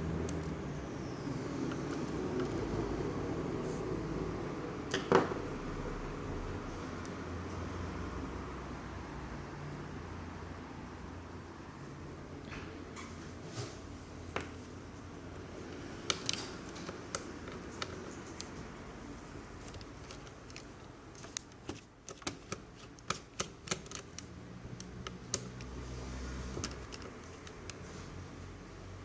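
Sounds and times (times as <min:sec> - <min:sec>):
plastic laptop parts clicking: 0:16.0 - 0:18.6, 0:19.6 - 0:25.9, 0:26.5 - 0:27.8.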